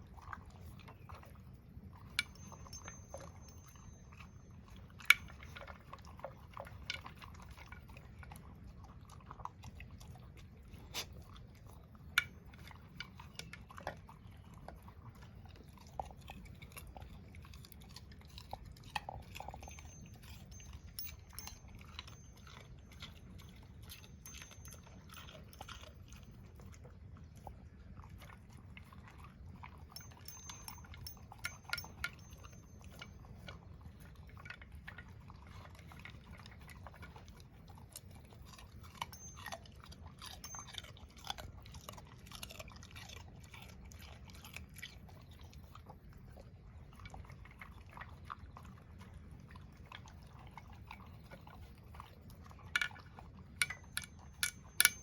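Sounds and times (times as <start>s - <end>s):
dog chewing with crunchy clicks: 0.0s - 55.0s.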